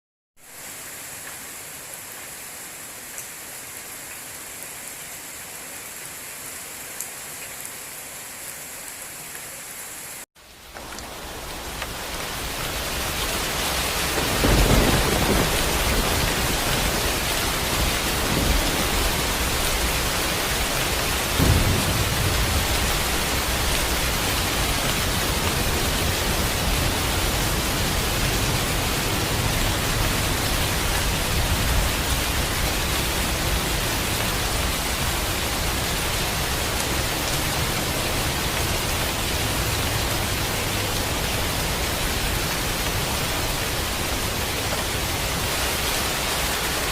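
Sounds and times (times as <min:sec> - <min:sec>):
heavy rain: 0:00.4 - 0:46.9
thunder rumbling: 0:11.1 - 0:40.6.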